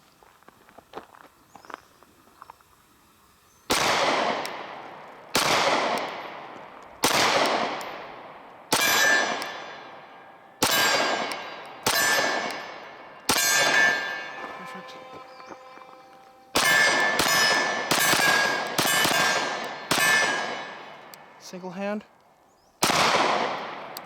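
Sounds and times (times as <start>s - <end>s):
pistol shots echoing: 3.7s - 21.4s, 22.8s - 24.0s
ringing tone: 10.8s - 19.5s.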